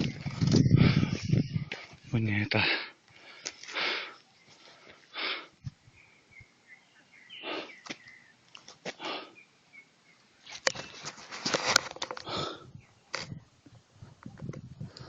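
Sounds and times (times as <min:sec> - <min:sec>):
person breathing hard: 0:00.7 - 0:01.3, 0:02.6 - 0:05.6, 0:07.4 - 0:07.8, 0:08.9 - 0:09.4, 0:12.2 - 0:12.8.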